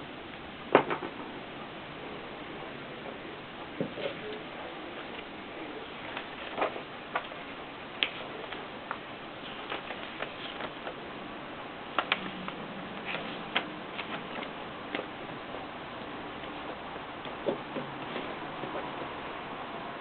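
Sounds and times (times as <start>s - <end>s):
background hiss: 0.0s - 20.0s.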